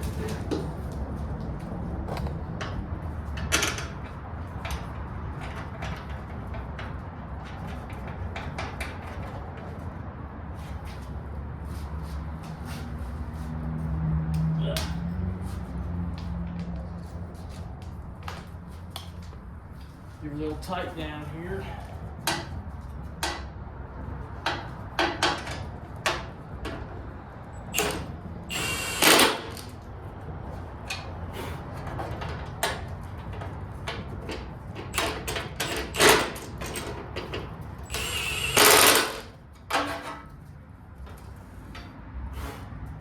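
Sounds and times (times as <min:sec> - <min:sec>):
ratchet rapid clicking: 0:27.8 - 0:29.7, 0:35.0 - 0:36.8, 0:37.8 - 0:39.3.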